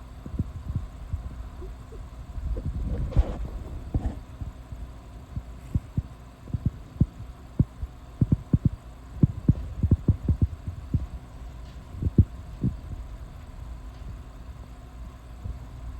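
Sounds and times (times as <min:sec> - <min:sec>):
faint steady hum: 0:00.0 - 0:15.9
soft low thumps: 0:00.3 - 0:04.6.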